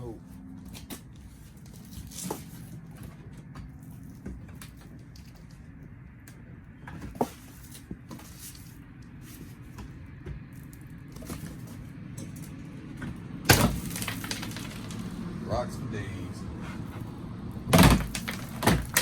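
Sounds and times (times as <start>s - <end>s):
loud clatter of rocks: 13.5s - 15.2s, 17.7s - 19.0s
gravel trickling and clicking: 13.5s - 15.3s, 17.8s - 19.0s.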